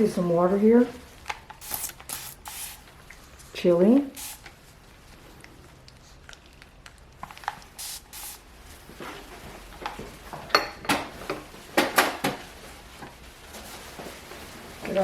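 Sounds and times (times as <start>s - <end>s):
water spray bottle spraying: 1.6s - 2.9s, 4.1s - 4.5s, 7.7s - 8.4s.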